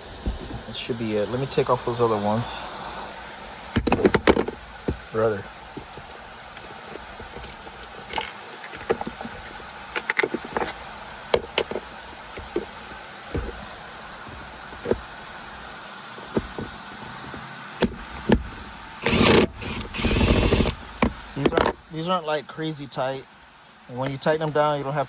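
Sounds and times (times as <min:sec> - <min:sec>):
clicks and knocks of tools: 0:05.8 - 0:12.8
cordless drill bursts: 0:19.0 - 0:21.4.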